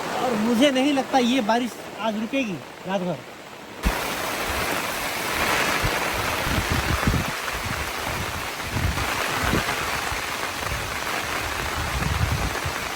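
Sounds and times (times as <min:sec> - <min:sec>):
heavy rain pouring: 0:00.0 - 0:12.9
wind buffeting the microphone: 0:03.8 - 0:12.9.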